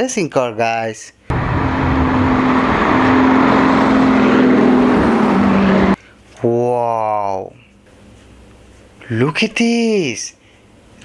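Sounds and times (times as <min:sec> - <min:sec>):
racing car engine drone: 0:01.3 - 0:06.0.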